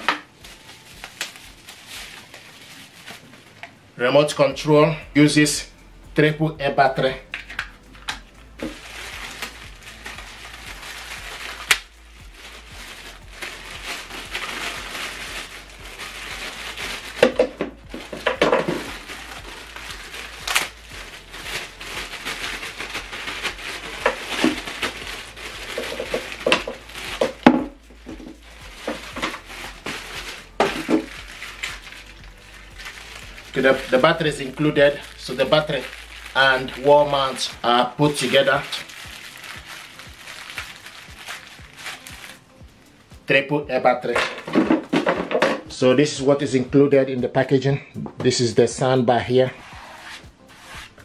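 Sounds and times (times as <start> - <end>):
plastic packaging crinkling: 0.0 - 3.9, 7.3 - 42.4.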